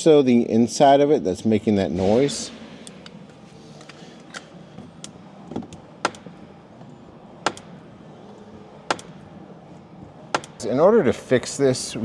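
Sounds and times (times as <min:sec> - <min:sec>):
car door check clicking: 0:04.3 - 0:06.3, 0:07.4 - 0:07.7, 0:08.8 - 0:09.2, 0:10.3 - 0:10.6.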